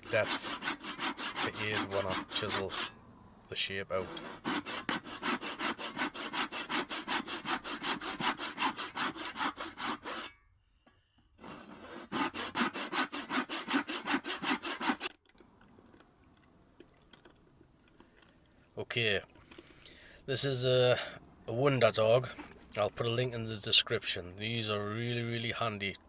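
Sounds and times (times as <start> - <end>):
hand saw cutting wood: 0.0 - 3.0, 3.7 - 10.4, 11.4 - 15.2.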